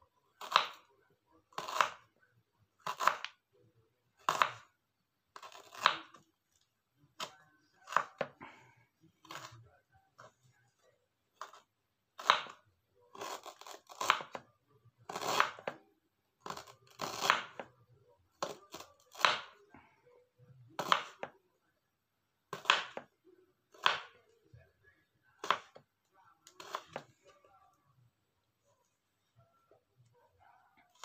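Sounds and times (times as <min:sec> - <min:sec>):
knife slicing on cutting board: 0:26.6 - 0:27.1.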